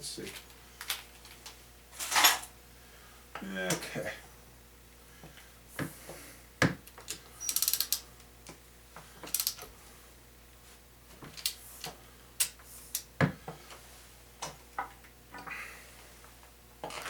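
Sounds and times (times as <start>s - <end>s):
ratchet clicks: 7.4s - 8.0s, 9.3s - 9.6s.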